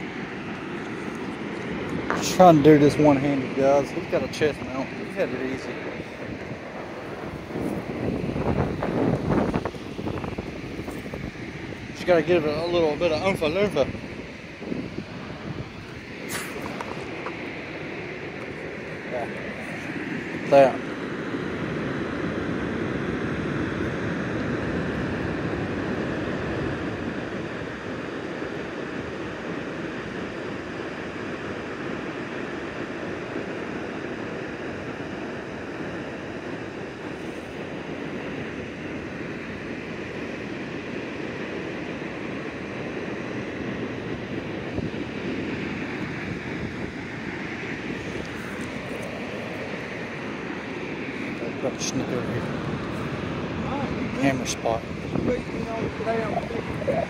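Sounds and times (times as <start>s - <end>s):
flowing river water: 0.0s - 57.0s.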